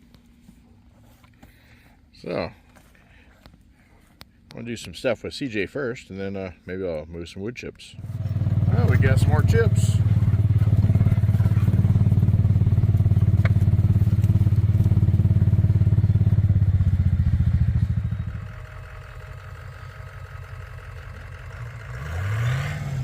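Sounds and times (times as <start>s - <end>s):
diesel tractor engine throbbing: 8.0s - 23.0s.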